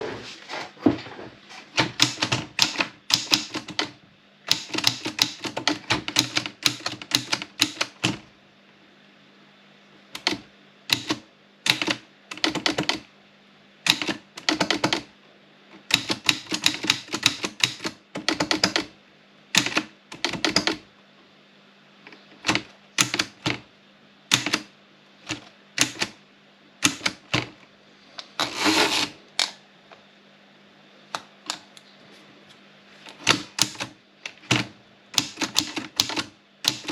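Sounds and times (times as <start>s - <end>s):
typewriter keys striking: 1.8s - 3.9s, 4.5s - 8.2s, 10.2s - 13.0s, 13.9s - 15.1s, 15.9s - 18.9s, 19.6s - 20.8s, 22.4s - 23.6s, 24.3s - 24.7s, 25.3s - 26.2s, 26.8s - 27.5s, 33.2s - 36.9s.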